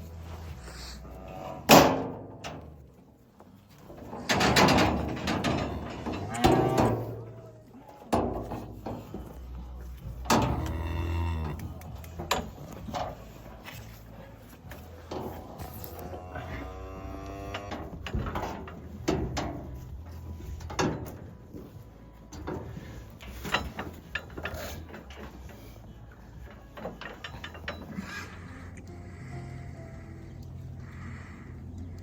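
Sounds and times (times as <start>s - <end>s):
cattle mooing: 0.9s - 1.8s, 5.7s - 7.5s, 10.3s - 12.0s, 15.4s - 18.0s, 28.0s - 32.0s.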